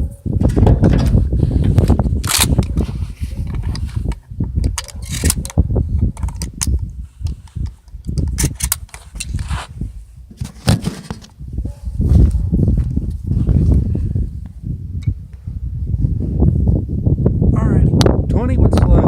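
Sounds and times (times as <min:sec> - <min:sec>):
shells loaded into shotgun: 0:02.2 - 0:09.5.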